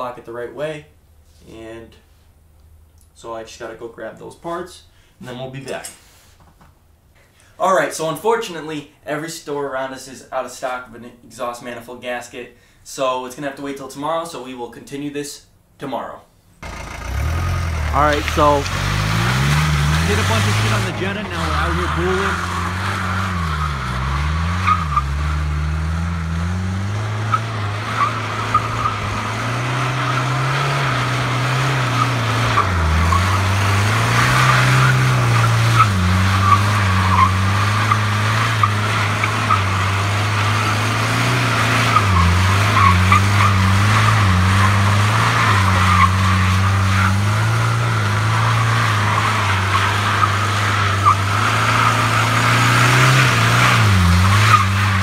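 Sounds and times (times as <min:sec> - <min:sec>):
diesel engine revving: 0:16.6 - 0:55.0
tyres squealing: 0:16.6 - 0:55.0.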